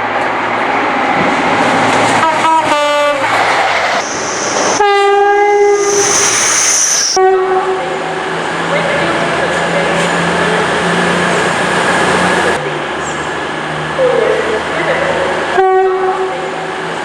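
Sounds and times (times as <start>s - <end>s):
moving train: 0.0s - 17.0s
train horn: 2.2s - 3.4s, 4.8s - 5.5s, 15.5s - 16.4s.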